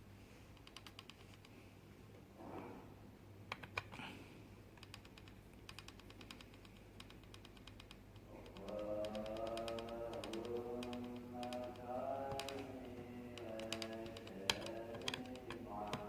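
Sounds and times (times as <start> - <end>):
hand tools clicking: 8.5 - 12.7, 13.3 - 16.0.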